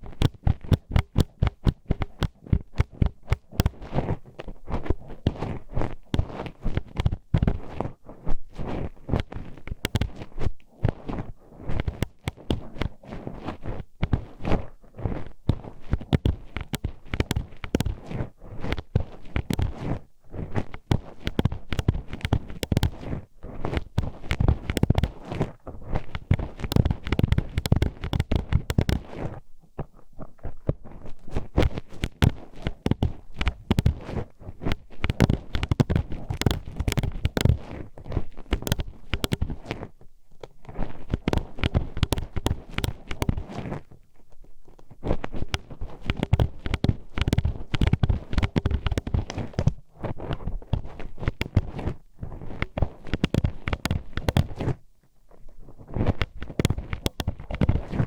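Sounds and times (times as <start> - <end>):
hairpin clicking on microphone: 26.2 - 29.0, 38.5 - 39.6.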